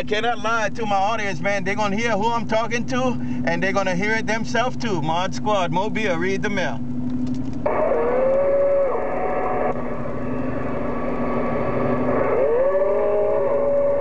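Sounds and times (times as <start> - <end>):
low hum: 0.0 - 14.0
radio static: 7.6 - 12.7.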